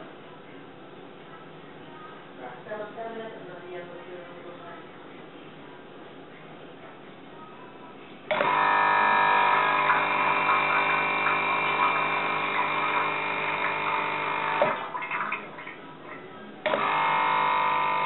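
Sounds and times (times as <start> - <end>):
espresso machine pump buzzing: 8.3 - 14.8, 16.7 - 18.0.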